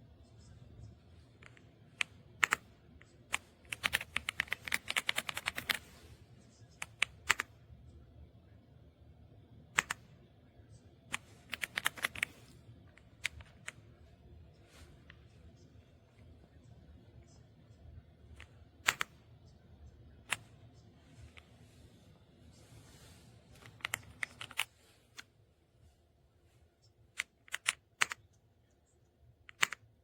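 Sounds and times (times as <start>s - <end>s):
mechanical keyboard typing: 1.4s - 2.7s, 3.3s - 5.9s, 6.8s - 7.5s, 9.8s - 10.0s, 11.1s - 12.4s, 18.4s - 19.2s, 23.6s - 24.7s, 27.2s - 28.2s, 29.5s - 29.9s.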